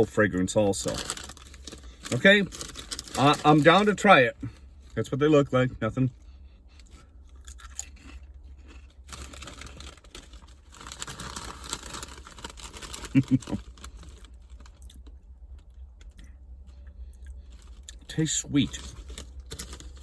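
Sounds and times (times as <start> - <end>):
potato chips crunching: 0.8 - 4.1, 6.8 - 16.3, 17.1 - 20.0.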